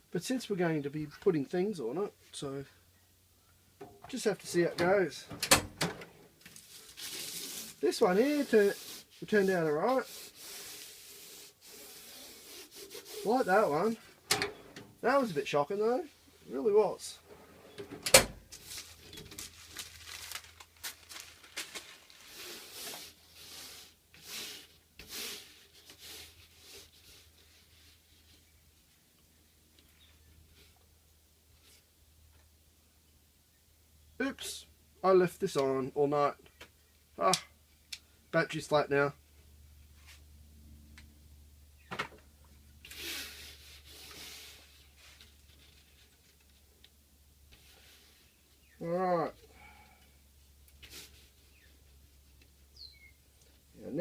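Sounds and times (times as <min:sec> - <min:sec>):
rubbing rustling sound: 0:06.3 - 0:14.2, 0:18.5 - 0:29.0, 0:39.9 - 0:40.3, 0:42.8 - 0:46.7, 0:50.8 - 0:52.4
foam liner rubbing and scraping: 0:06.6 - 0:14.0.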